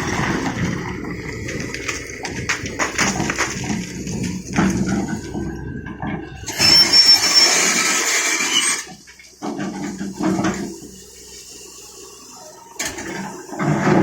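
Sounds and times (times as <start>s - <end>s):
knocks and clatter: 0.0s - 6.8s
excavator running: 0.0s - 14.0s.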